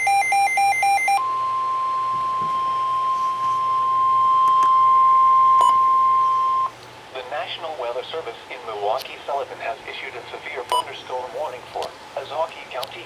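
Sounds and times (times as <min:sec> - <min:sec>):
long steady alarm tone: 0:00.0 - 0:06.8.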